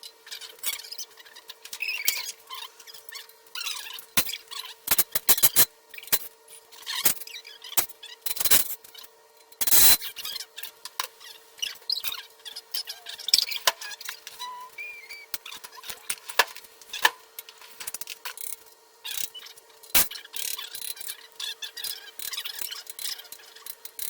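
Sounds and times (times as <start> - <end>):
short high squeaks: 9.6 - 10.5, 11.2 - 15.9.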